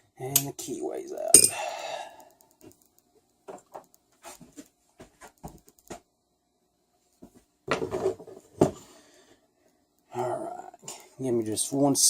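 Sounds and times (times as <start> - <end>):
tools clicking and tapping: 0.3 - 0.6, 1.2 - 1.6.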